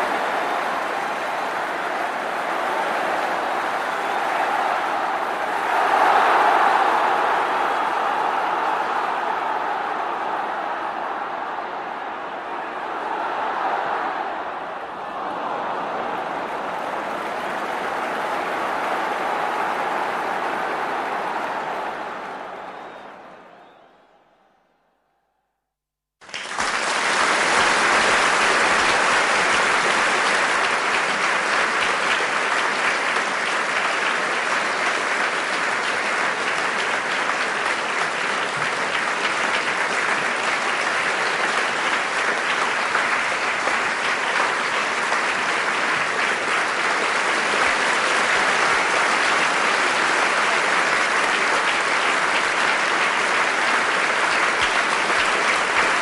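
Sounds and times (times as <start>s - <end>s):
crowd applauding: 0.0s - 24.8s, 26.2s - 56.0s.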